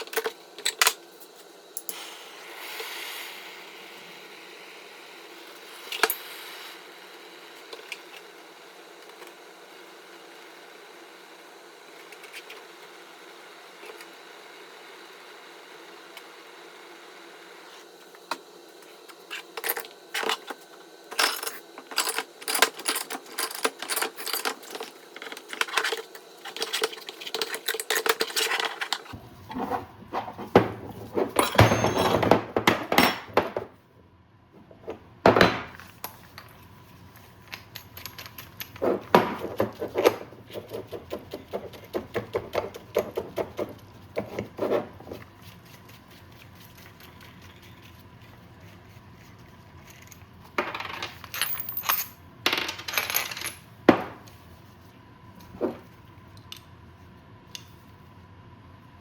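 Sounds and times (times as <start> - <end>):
tools and metal parts clinking: 0.0 - 1.0, 19.2 - 29.2, 31.3 - 33.7, 37.2 - 40.9, 49.8 - 54.2.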